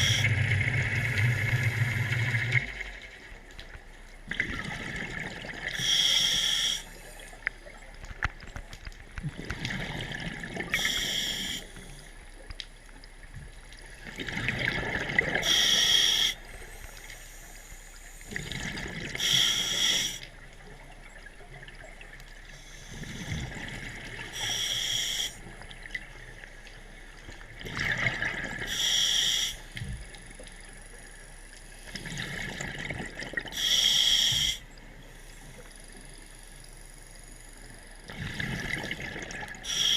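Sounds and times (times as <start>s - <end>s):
regulator hissing inhale: 5.7s - 7.2s, 10.7s - 12.1s, 15.4s - 18.4s, 19.2s - 20.3s, 22.5s - 23.4s, 24.3s - 25.4s, 28.7s - 29.8s, 33.5s - 35.7s, 39.6s - 39.9s.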